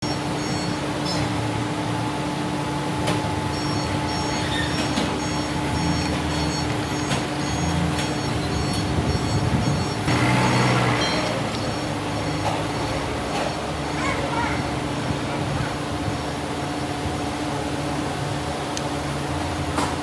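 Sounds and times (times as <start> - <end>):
heavy machinery rumbling: 0.0 - 20.0
high-pitched beeps: 3.5 - 13.1.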